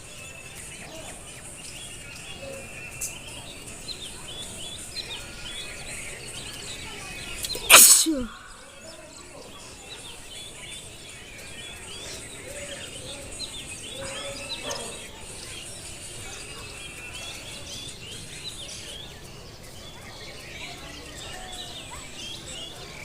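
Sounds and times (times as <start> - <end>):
small birds chirping: 0.0 - 23.0
steady high hiss: 7.4 - 8.7.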